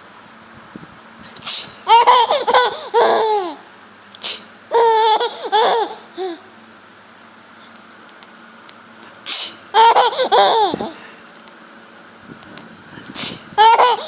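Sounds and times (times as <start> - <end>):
breathy fake sneeze: 1.4 - 1.8, 4.2 - 4.5, 9.2 - 9.6
baby giggling: 1.8 - 3.6, 4.7 - 6.5, 9.7 - 11.0, 13.6 - 14.0.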